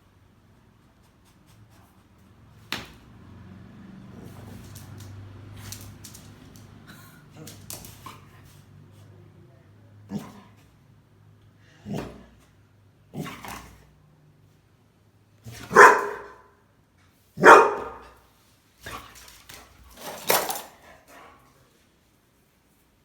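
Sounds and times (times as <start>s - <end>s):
dog barking: 15.5s - 16.6s, 17.4s - 18.2s.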